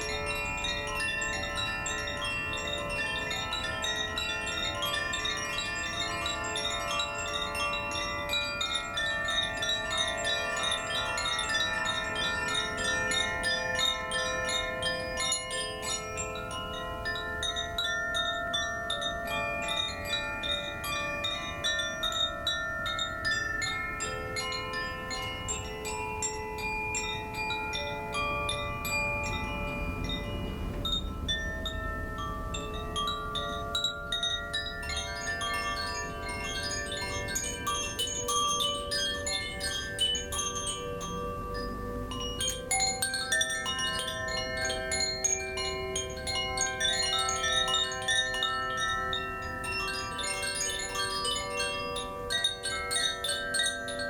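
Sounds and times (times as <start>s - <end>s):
chimes tinkling: 0.0s - 54.0s.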